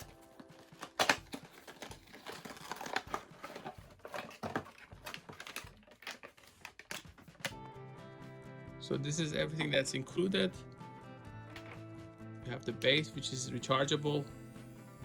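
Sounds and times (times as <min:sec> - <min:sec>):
packaging rustling and crinkling: 0:00.0 - 0:07.5.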